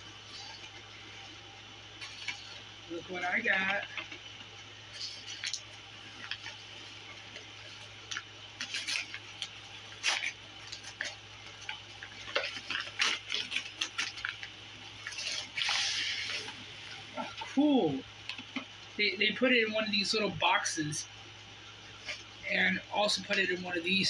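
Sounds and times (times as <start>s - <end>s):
packaging crinkling and clicking: 4.0s - 17.4s.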